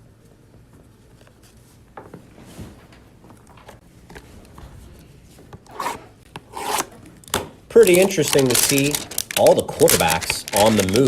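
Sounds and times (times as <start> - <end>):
cards and packaging rustling: 7.7 - 11.0.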